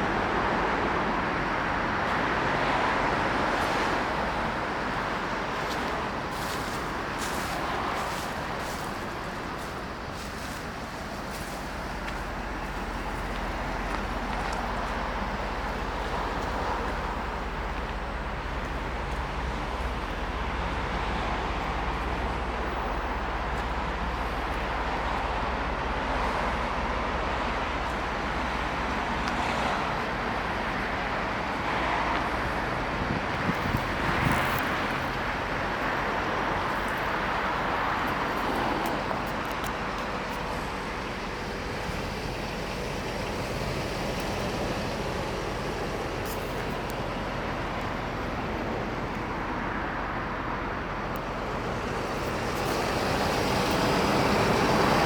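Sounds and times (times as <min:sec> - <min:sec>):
motor vehicle noise: 0:00.0 - 0:55.0
wind on microphone: 0:32.4 - 0:35.1.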